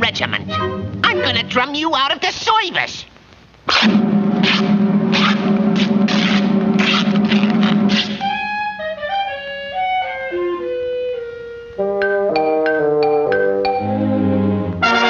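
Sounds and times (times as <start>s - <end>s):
falling woodwind melody: 0.4s - 1.5s, 3.9s - 15.0s
drum beats: 3.6s - 8.8s
short detached orchestral notes: 13.7s - 15.0s.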